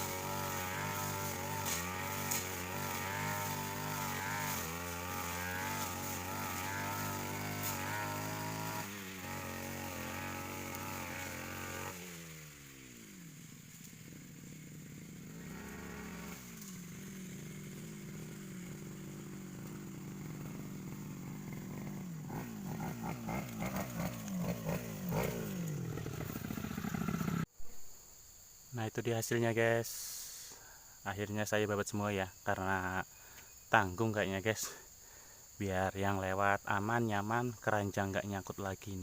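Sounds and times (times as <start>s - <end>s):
brush cutter engine revving: 0.0s - 27.5s.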